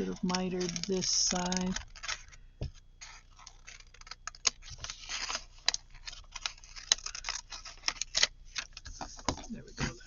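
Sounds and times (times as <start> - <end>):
paper snipping: 0.0 - 2.3
paper rustling: 0.0 - 10.0.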